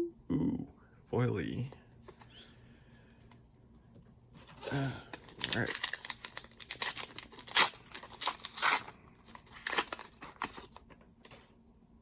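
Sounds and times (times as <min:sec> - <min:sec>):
foil wrapper crinkling and tearing: 0:04.5 - 0:11.5.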